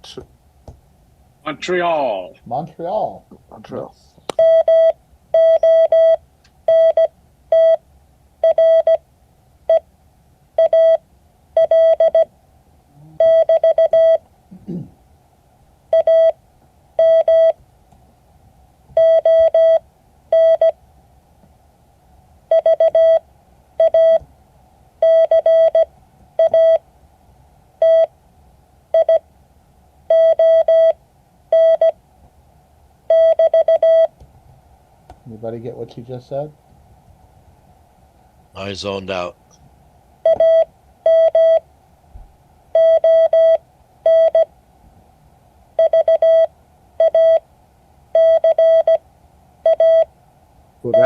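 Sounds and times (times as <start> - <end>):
morse code beep tone: 4.4 - 7.8, 8.4 - 9.0, 10.6 - 11.0, 11.6 - 12.3, 13.2 - 14.2, 17.0 - 17.6, 19.0 - 20.7, 22.5 - 23.2, 23.8 - 24.2, 25.0 - 26.8, 29.0 - 29.2, 30.1 - 31.0, 31.6 - 32.0, 33.1 - 34.1, 40.3 - 41.6, 42.8 - 44.5, 45.8 - 47.4, 48.2 - 49.0, 49.7 - 50.1.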